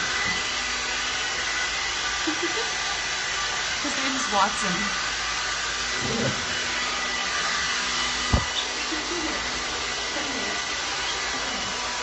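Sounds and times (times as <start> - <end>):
hair dryer running: 0.0 - 12.0.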